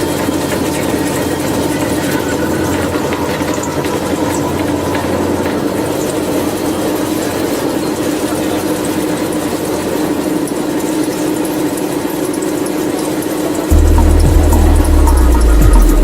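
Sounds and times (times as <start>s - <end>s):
milling machine humming: 0.0s - 10.9s, 13.7s - 16.0s
deep hum: 13.7s - 16.0s.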